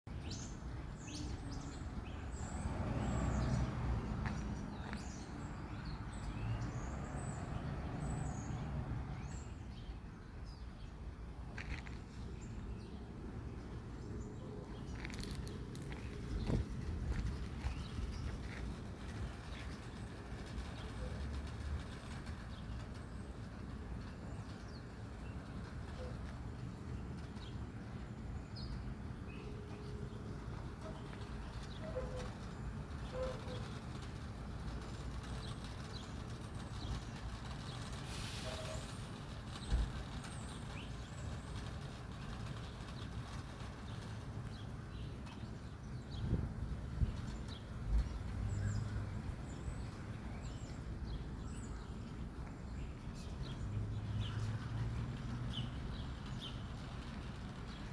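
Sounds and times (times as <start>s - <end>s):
steady low rumble: 12.3s - 24.8s.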